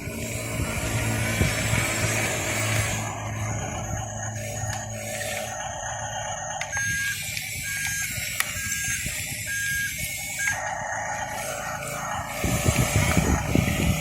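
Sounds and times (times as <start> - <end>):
low motor hum: 0.0 - 14.0
short electronic beeps: 6.4 - 10.6.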